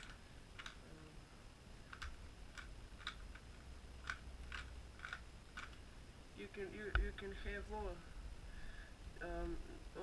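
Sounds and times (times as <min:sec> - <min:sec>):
puzzle cube layers clicking: 0:00.0 - 0:00.9, 0:01.9 - 0:05.8.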